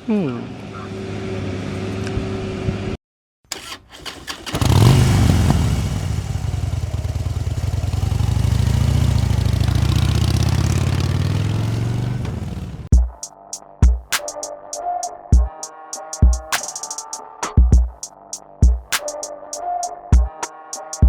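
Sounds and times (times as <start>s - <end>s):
engine starting and running: 3.5s - 12.9s.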